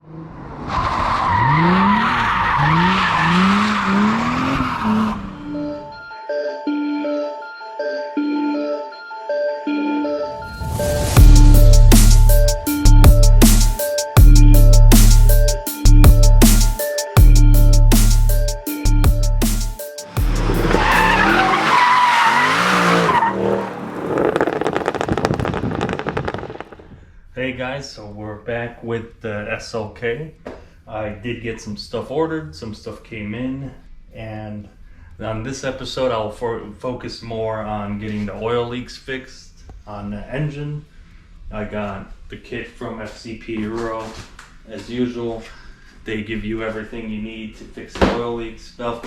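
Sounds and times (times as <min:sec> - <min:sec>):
car engine revving: 0:00.0 - 0:05.9, 0:20.1 - 0:27.0
tires squealing: 0:00.0 - 0:05.9, 0:20.1 - 0:26.9
background music: 0:05.0 - 0:23.3.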